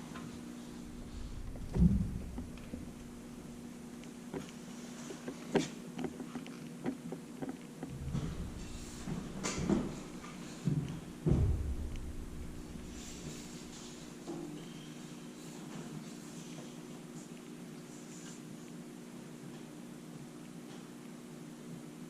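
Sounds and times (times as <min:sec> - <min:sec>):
dull thumps: 0:00.8 - 0:04.4, 0:07.9 - 0:14.1.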